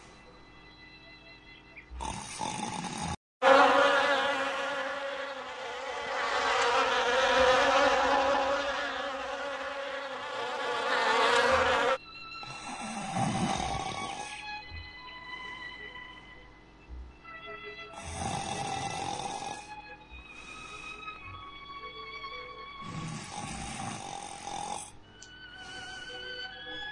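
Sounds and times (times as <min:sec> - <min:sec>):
insect buzzing in flight: 0:03.4 - 0:12.0.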